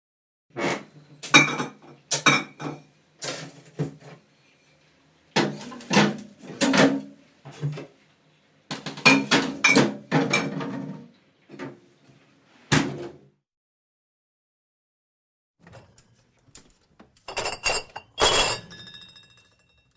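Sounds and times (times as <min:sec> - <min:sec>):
glass bottles clinking: 0:17.2 - 0:19.9.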